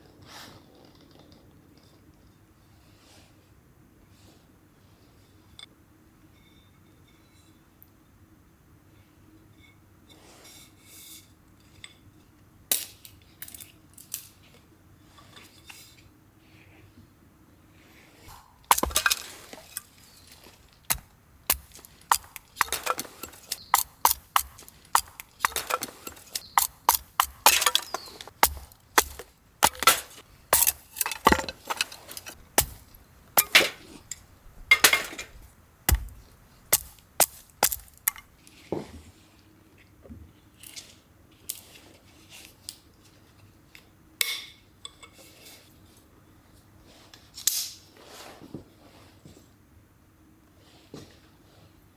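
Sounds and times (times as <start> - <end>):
camping gear clicking and clinking: 18.3 - 38.3.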